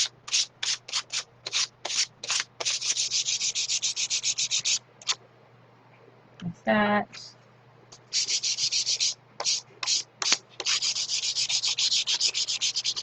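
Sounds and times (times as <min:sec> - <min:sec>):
sandpaper rubbing on wood: 0:00.0 - 0:04.8, 0:08.1 - 0:13.0.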